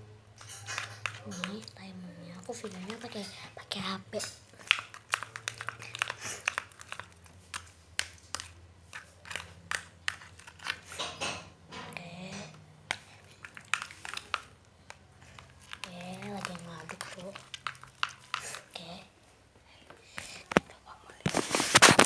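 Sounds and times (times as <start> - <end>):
slime stirred with sticky clicks: 0.3 - 11.1, 12.2 - 19.1.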